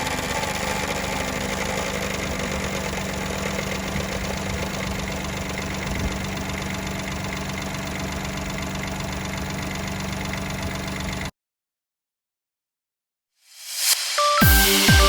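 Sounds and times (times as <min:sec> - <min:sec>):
car engine idling: 0:00.0 - 0:11.3.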